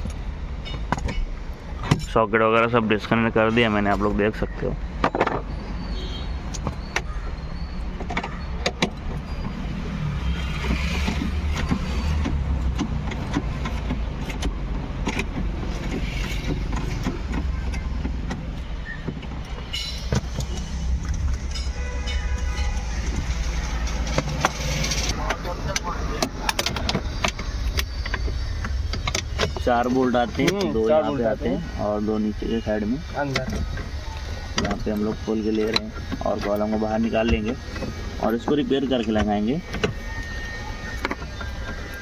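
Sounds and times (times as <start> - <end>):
hand tools clicking and knocking: 0.0 - 5.6, 6.4 - 42.0
steady low rumble: 14.1 - 32.1.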